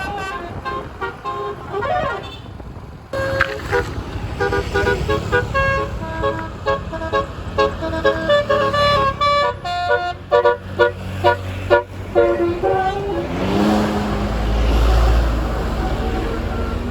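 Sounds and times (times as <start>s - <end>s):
air horn playing fast melody: 0.0s - 2.4s, 3.2s - 13.8s
engine rumbling low: 0.0s - 16.9s.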